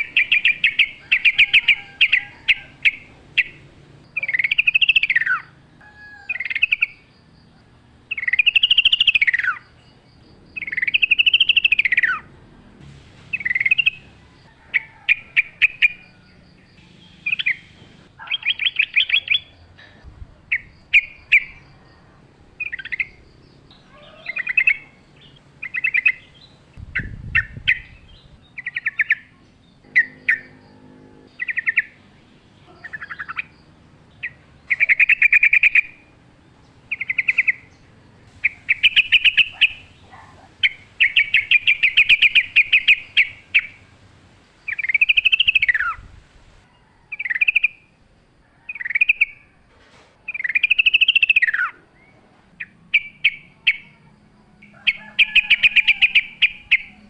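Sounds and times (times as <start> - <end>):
bird singing loudly: 0.0 - 7.0, 8.1 - 9.7, 10.6 - 12.2, 13.2 - 16.2, 16.8 - 19.6, 22.6 - 33.5, 38.3 - 46.2, 54.6 - 57.0.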